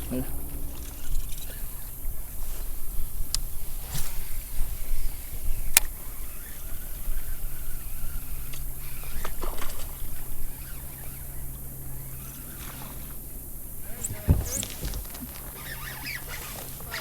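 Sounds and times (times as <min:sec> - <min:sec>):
water sloshing around kayak: 0:08.7 - 0:17.0
soft scraping: 0:11.9 - 0:17.0
knocks against hull: 0:13.9 - 0:15.8.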